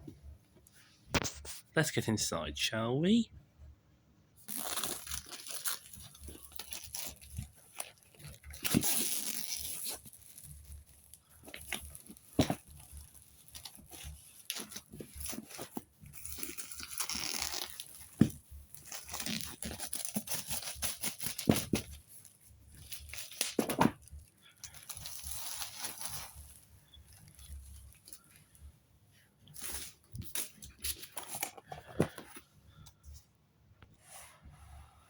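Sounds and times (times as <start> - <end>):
wrapping crinkling and tearing: 4.4 - 28.6, 29.5 - 32.3.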